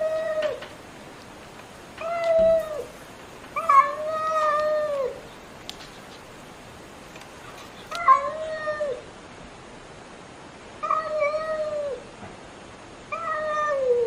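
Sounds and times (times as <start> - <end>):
cat meowing: 2.0 - 2.9, 3.6 - 5.2, 7.9 - 9.0, 10.8 - 12.0, 13.1 - 14.0.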